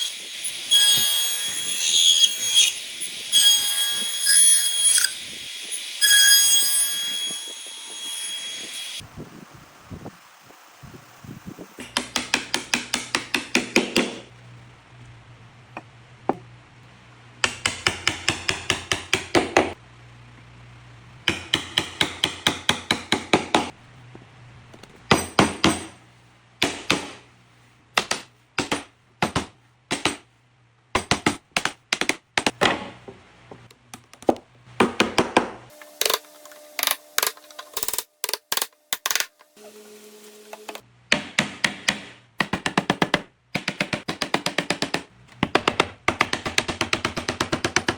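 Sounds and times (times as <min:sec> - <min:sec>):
hammering on wood: 0:11.8 - 0:14.3, 0:41.1 - 0:47.9.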